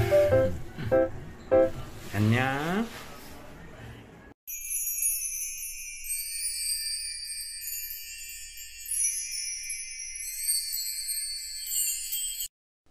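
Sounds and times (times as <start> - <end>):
high tinkling chime: 4.5 - 12.5.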